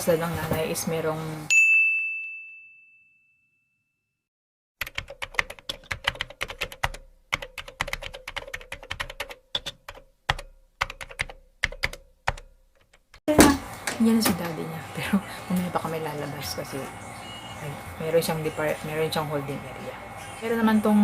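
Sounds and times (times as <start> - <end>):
ding ringing tone: 1.5 - 4.2
typing on a keyboard: 4.8 - 13.0.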